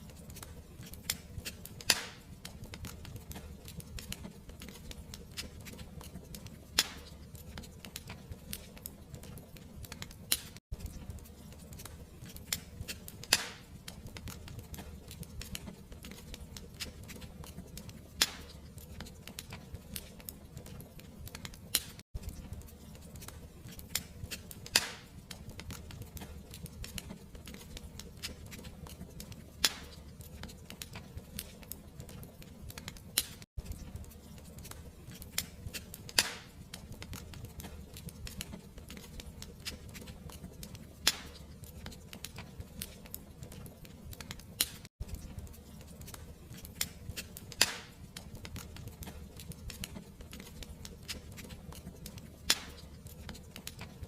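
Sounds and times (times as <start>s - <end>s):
wood fire crackling: 0.0s - 54.0s
sharp fire pops: 0.4s - 4.2s, 6.7s - 7.3s, 11.7s - 15.6s, 18.2s - 18.6s, 23.2s - 27.0s, 29.6s - 30.0s, 34.7s - 38.4s, 41.0s - 41.4s, 46.0s - 48.2s, 52.4s - 52.9s.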